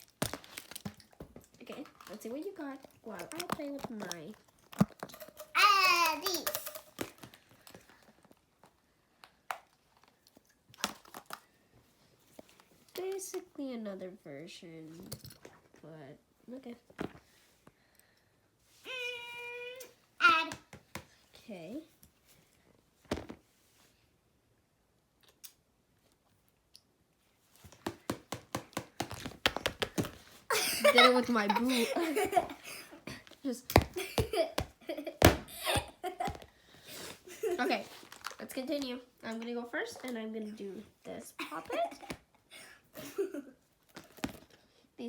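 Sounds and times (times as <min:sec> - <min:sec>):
fidget toys clicking and rustling: 0:00.0 - 0:11.5
plastic toys clicking: 0:03.0 - 0:07.8.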